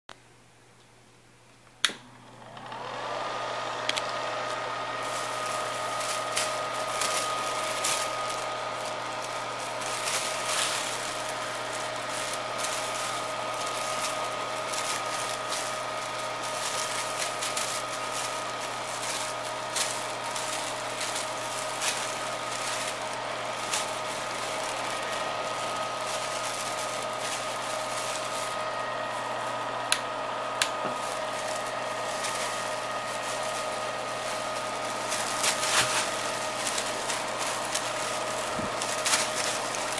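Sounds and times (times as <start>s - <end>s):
hair dryer switch click: 1.8s - 2.1s, 3.8s - 4.6s, 29.9s - 30.9s
hair dryer motor whining: 1.8s - 39.9s.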